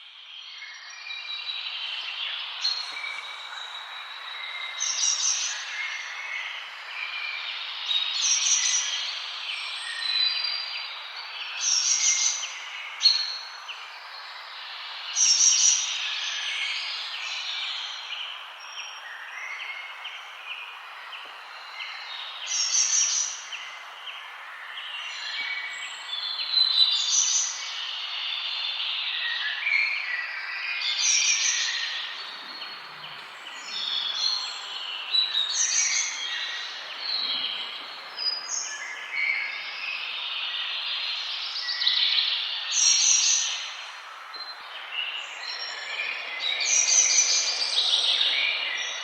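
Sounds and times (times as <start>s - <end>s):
forest birds chorus: 0.0s - 49.0s
steady background hiss: 0.0s - 49.0s
loud high rapid birdsong: 30.3s - 49.0s.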